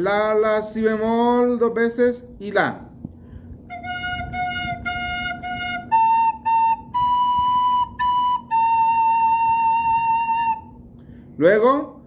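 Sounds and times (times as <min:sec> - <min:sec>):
flute playing a melody: 0:03.7 - 0:10.8.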